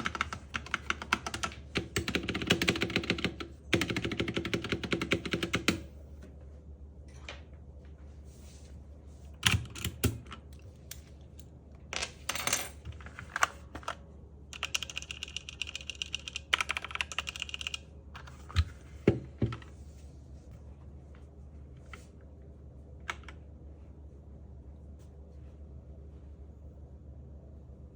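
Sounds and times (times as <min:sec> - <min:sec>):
mechanical keyboard keys clicking: 0:00.0 - 0:05.8, 0:13.3 - 0:18.3.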